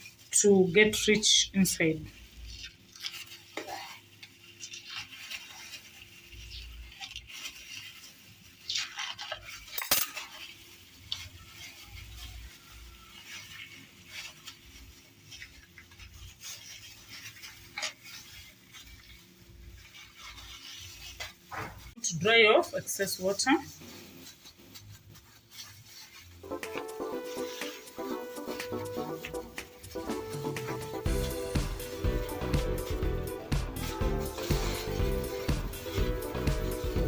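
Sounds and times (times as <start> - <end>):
light scraping and rubbing: 2.1 - 22.0
utensils and dishware clinking: 9.7 - 10.5.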